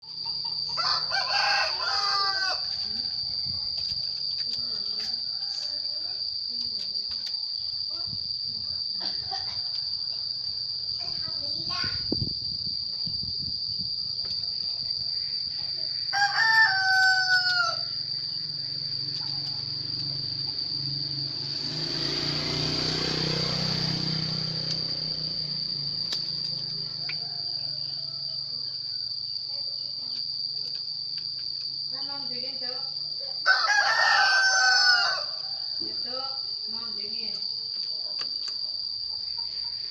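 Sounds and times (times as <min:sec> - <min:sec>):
high insect trill: 0:00.0 - 0:39.9
rooster crowing: 0:00.2 - 0:03.2, 0:05.0 - 0:05.9, 0:15.9 - 0:18.2, 0:26.8 - 0:29.2, 0:33.4 - 0:36.1.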